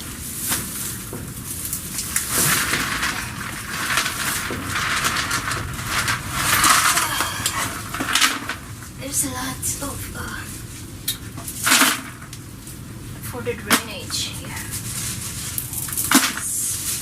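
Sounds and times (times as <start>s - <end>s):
hands digging through potting soil: 0.0s - 8.1s, 13.6s - 17.0s.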